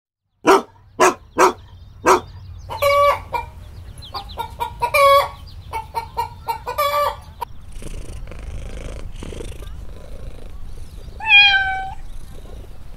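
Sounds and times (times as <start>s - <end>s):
chicken squawks: 0.5s - 3.5s, 4.2s - 7.3s, 11.2s - 12.0s
chickens clucking: 0.5s - 12.9s.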